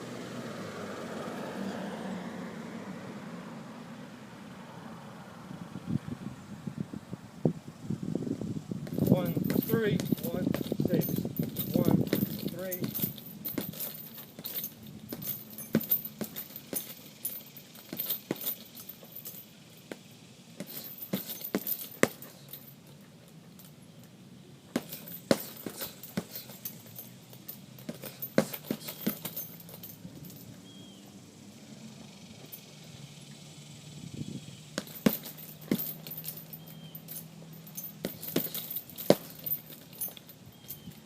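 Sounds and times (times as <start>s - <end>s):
gloves thudding on punching bag: 8.8s - 17.0s, 20.6s - 22.4s, 24.7s - 27.0s, 27.8s - 29.6s, 34.8s - 36.4s, 37.9s - 39.9s.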